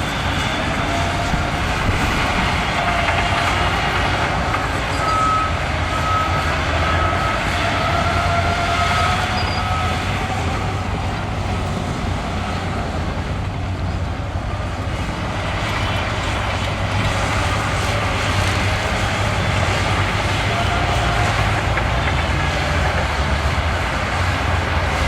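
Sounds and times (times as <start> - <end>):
bulldozer diesel engine running: 0.0 - 25.0
faint high squeal: 4.8 - 10.5.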